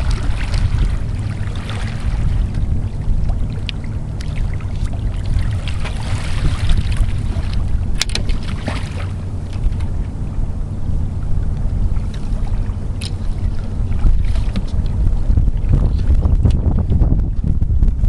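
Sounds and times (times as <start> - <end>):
water ambience: 0.0 - 18.0
wind buffeting microphone: 0.0 - 18.0.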